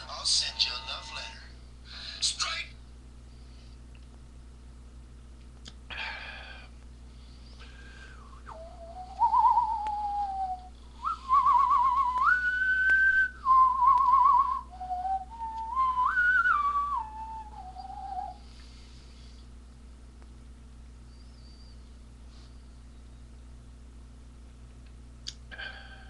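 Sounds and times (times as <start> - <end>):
person whistling a tune: 8.2 - 18.4.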